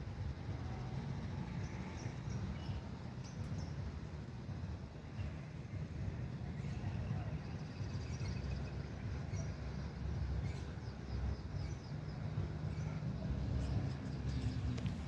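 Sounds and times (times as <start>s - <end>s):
steady low rumble: 0.0s - 15.0s.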